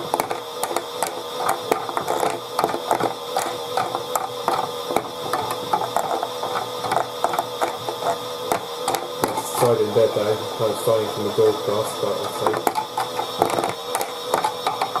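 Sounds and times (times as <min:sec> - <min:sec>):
toy washing machine running: 0:00.0 - 0:15.0.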